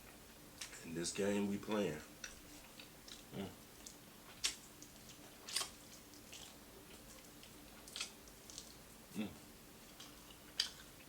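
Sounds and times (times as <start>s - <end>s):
person chewing crispy food: 2.2s - 11.0s.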